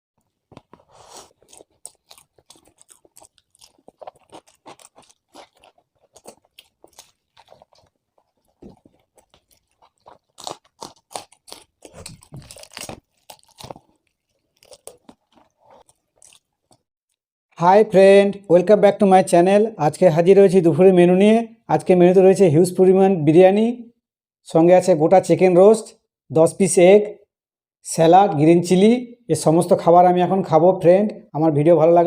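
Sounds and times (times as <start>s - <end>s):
person crunching and chewing: 0.2s - 16.9s.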